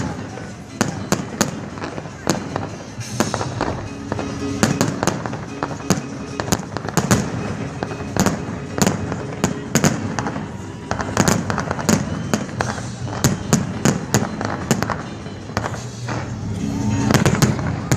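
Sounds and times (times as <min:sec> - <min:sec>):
rumble of firework bursts: 0:00.0 - 0:17.9
sharp firework bangs: 0:00.0 - 0:17.9.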